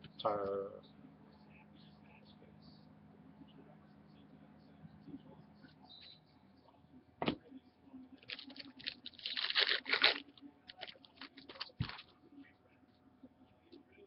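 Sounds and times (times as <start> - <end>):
packaging crinkling and rustling: 8.2 - 12.1.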